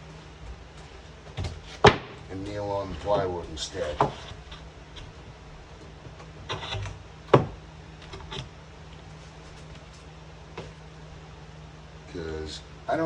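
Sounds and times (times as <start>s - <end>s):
plywood scraping: 2.5s - 5.2s, 6.4s - 7.0s.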